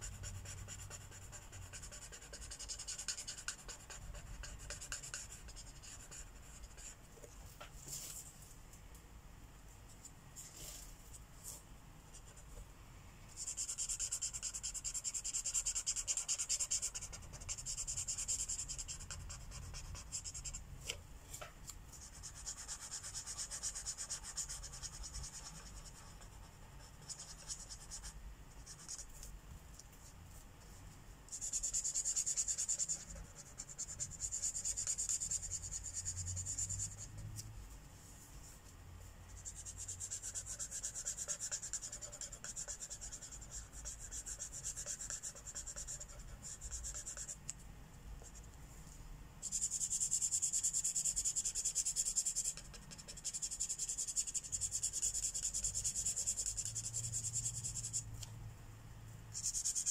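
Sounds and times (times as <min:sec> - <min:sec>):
marker rubbing on paper: 0:00.0 - 0:07.0, 0:13.4 - 0:20.6, 0:22.0 - 0:29.3, 0:31.3 - 0:37.3, 0:39.3 - 0:47.4, 0:49.4 - 0:58.1, 0:59.3 - 0:59.9.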